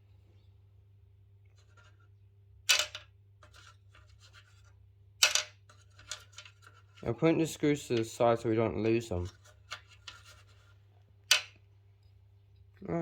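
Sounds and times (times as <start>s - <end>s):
faint scraping and rubbing: 1.5s - 2.2s, 3.4s - 4.8s, 5.7s - 7.3s, 9.1s - 11.0s.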